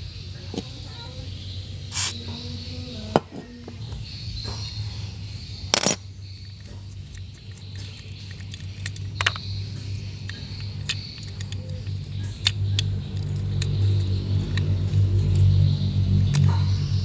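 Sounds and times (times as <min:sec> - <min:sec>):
steady low hum: 0:00.0 - 0:17.0
small metal parts clicking: 0:05.7 - 0:15.6.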